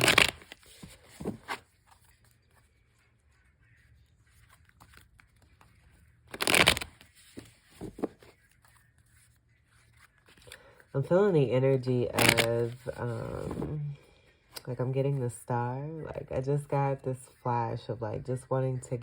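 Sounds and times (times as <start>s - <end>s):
cards riffling: 0.0s - 2.7s, 4.2s - 9.0s, 12.2s - 13.0s
cards rustling: 0.0s - 11.0s, 12.0s - 13.8s.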